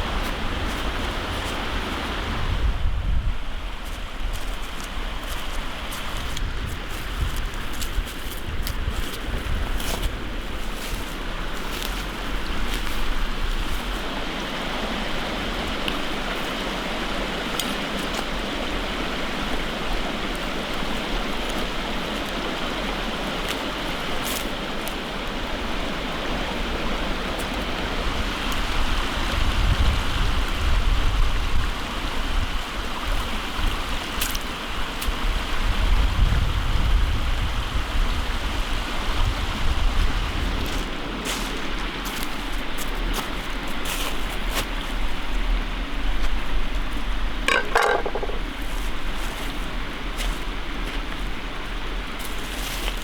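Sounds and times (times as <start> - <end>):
stream water rushing: 0.0 - 35.8.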